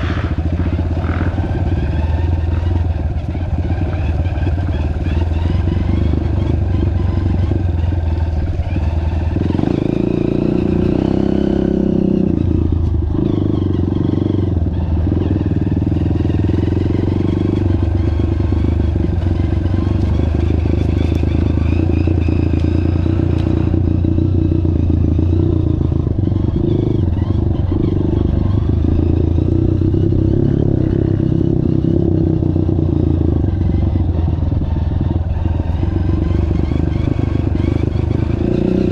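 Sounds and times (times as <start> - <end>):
motorcycle engine running: 0.0 - 38.9
rattle over rough ground: 0.0 - 38.9.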